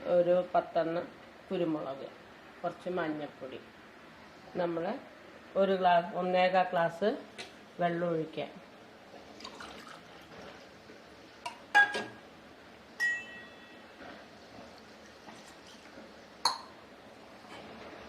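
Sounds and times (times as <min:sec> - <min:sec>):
short ringing tone: 0:13.0 - 0:13.9.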